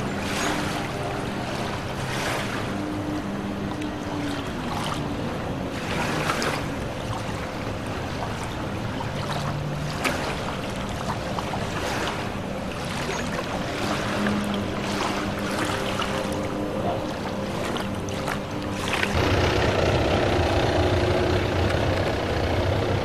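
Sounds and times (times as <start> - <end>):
water lapping: 0.0 - 23.0
wind: 0.0 - 23.0
low hum: 14.0 - 23.0.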